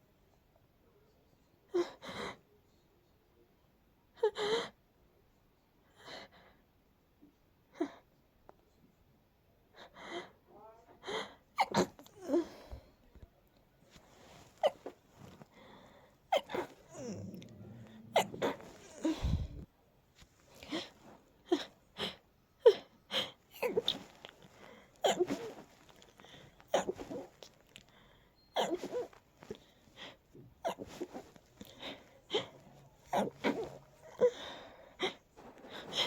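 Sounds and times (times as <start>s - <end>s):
person stifling sneezes: 11.6s - 12.8s, 14.1s - 15.4s, 16.3s - 19.6s, 22.7s - 27.5s, 28.6s - 29.6s, 30.6s - 36.0s.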